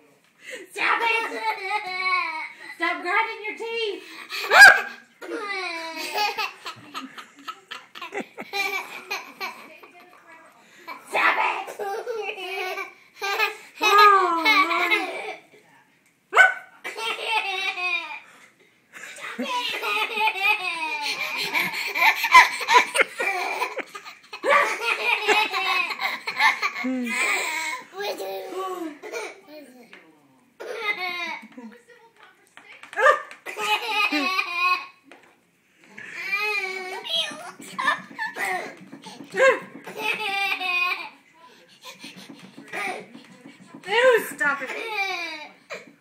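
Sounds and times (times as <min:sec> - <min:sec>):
laughter: 0:06.0 - 0:10.0, 0:18.9 - 0:27.4, 0:33.5 - 0:34.8
baby laughing and babbling: 0:25.8 - 0:29.8.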